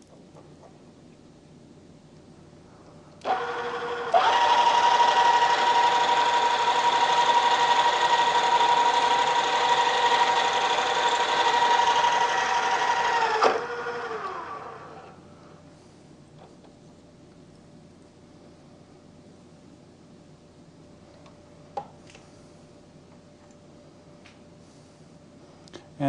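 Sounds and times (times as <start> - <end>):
drill press motor whine: 3.2 - 15.2.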